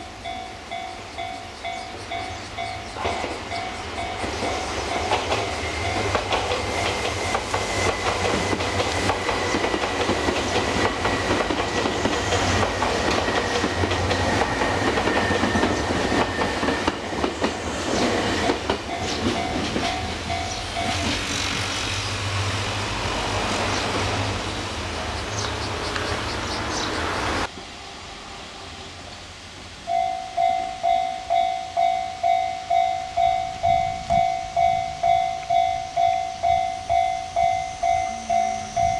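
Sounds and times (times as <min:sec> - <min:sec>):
level crossing warning bell: 0:00.0 - 0:11.7, 0:18.3 - 0:21.2, 0:29.8 - 0:38.9
train wheels clacking over rails: 0:01.2 - 0:24.6.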